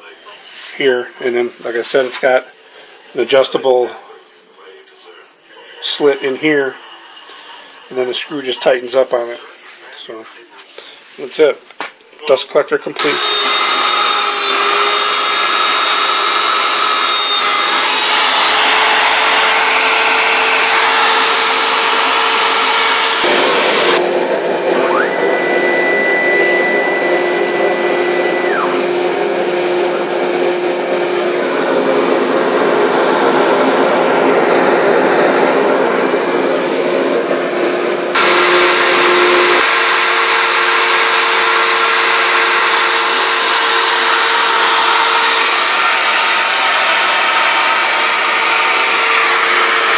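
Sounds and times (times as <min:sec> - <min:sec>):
router and dust collector running: 0:13.0 - 0:49.9
higher tone rising: 0:23.1 - 0:40.0.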